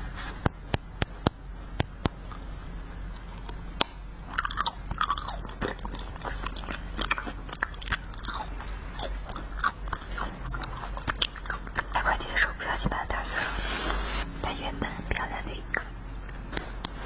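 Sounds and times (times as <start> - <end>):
chewing wax candy: 3.1 - 3.6, 4.3 - 12.0.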